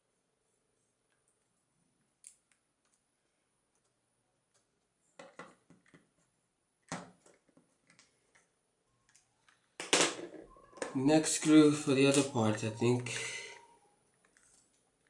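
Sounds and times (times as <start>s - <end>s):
small wooden parts clicking: 2.1s - 3.0s.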